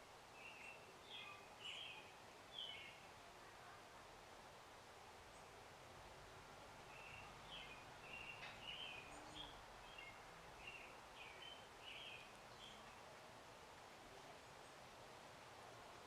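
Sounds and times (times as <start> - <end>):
outdoor background hiss: 0.0 - 16.0
songbird chirping and warbling: 0.4 - 3.0, 6.9 - 13.0.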